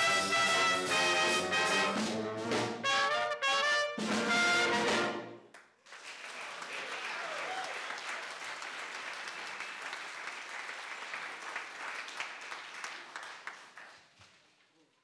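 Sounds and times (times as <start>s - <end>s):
crowd applauding: 5.5s - 14.2s.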